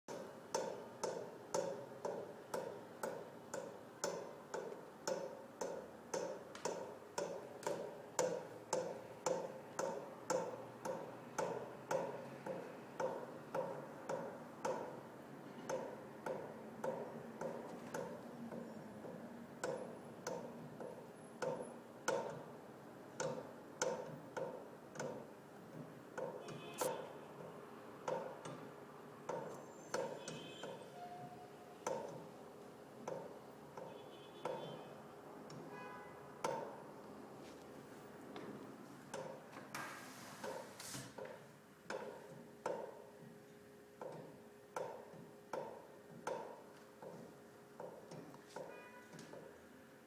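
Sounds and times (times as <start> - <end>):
pipe banging with ringing knocks: 29.3 - 32.3.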